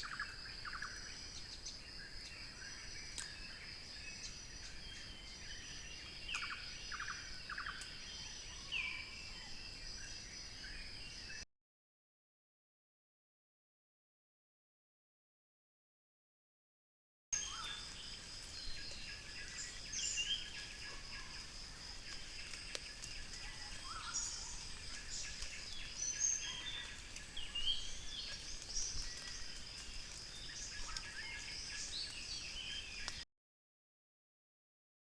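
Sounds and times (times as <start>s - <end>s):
bird calls and chirps: 0.0s - 11.4s, 17.4s - 33.3s
insect trill: 0.0s - 11.4s, 17.4s - 33.2s.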